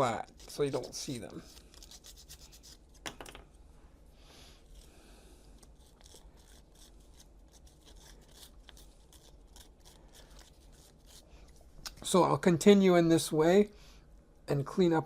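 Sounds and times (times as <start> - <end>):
sandpaper scratching on resin: 0.0 - 2.9, 5.8 - 11.3.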